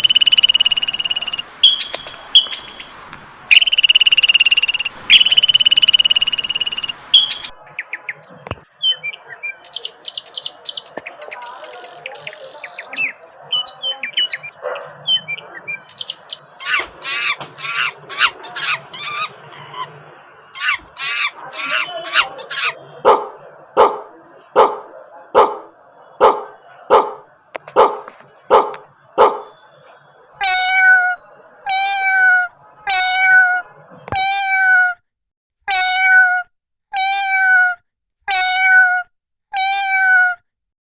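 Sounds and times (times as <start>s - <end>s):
bird squawking calls: 0.0s - 2.9s, 3.5s - 22.9s
birds chirping: 0.0s - 34.6s
dog barking: 14.5s - 15.8s, 22.2s - 30.0s.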